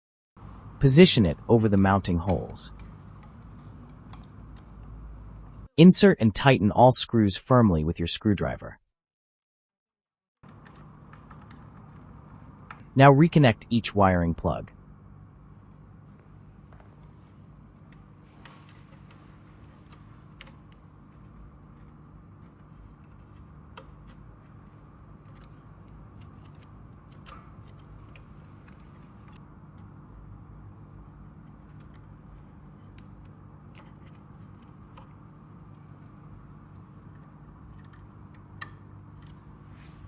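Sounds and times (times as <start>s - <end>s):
faint low hum: 0.4s - 8.7s.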